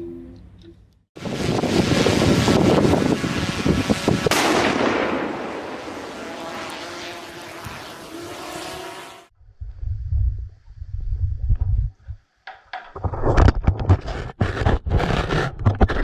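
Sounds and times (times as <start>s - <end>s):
rumbling blast with sharp crack: 1.2s - 6.2s.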